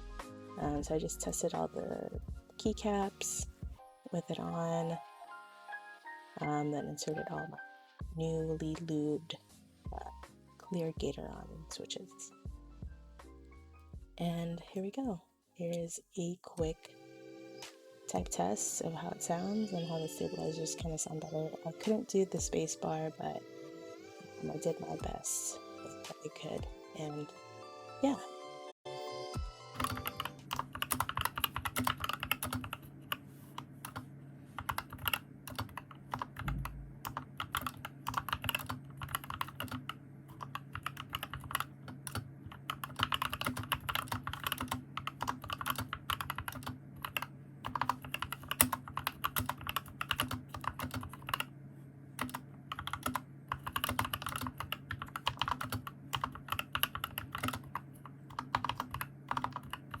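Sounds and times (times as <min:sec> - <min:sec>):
fast mechanical keyboard typing: 0:29.8 - 0:32.8, 0:33.8 - 0:34.0, 0:34.6 - 0:51.5, 0:52.2 - 1:00.0.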